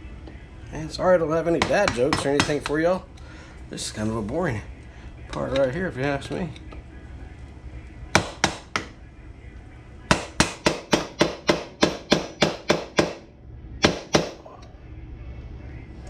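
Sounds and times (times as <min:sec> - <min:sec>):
hammer striking metal: 0:08.2 - 0:08.9, 0:10.1 - 0:13.2, 0:13.8 - 0:14.4.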